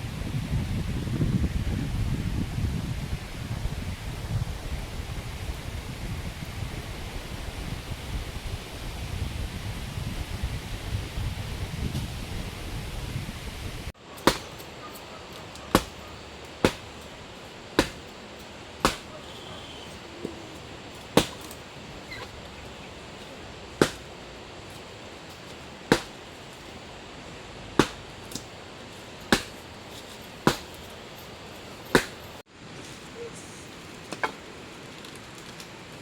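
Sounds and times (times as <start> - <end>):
steady hiss: 2.6 - 36.0
tool striking wood: 14.2 - 14.7, 15.6 - 17.0, 17.8 - 18.1, 18.8 - 19.2, 21.2 - 21.6, 23.8 - 24.1, 25.9 - 26.2, 27.8 - 28.5, 29.3 - 29.6, 30.4 - 30.8, 31.9 - 32.2.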